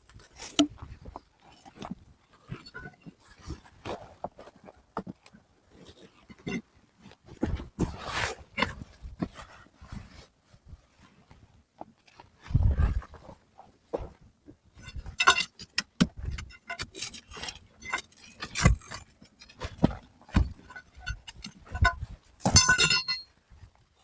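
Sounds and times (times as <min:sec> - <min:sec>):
hard objects clinking and clattering: 0:14.8 - 0:23.3
scraping and rattling: 0:14.8 - 0:23.3.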